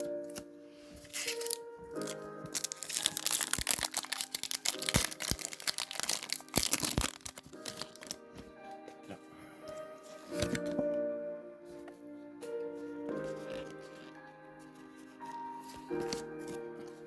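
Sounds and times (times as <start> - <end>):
background music: 0.0 - 17.0
foil wrapper crinkling and tearing: 1.0 - 8.2.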